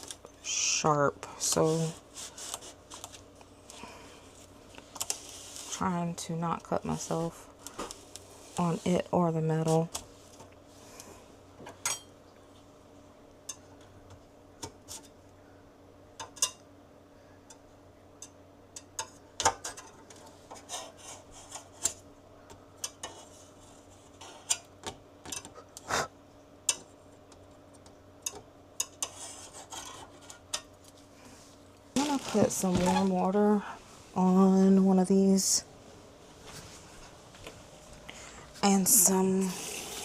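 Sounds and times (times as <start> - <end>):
faint steady hum: 0.0 - 40.0.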